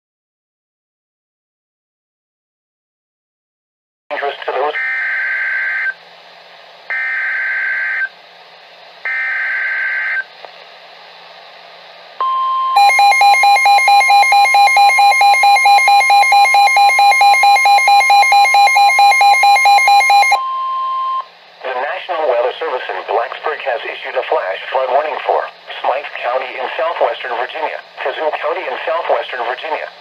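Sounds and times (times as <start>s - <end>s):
steady warning alarm tone: 4.7s - 6.0s, 6.9s - 8.1s, 9.1s - 10.2s, 12.2s - 21.3s
harsh pulsing beep: 12.2s - 21.2s
buzzing digital data tones: 12.8s - 20.4s
faint static: 21.2s - 30.0s.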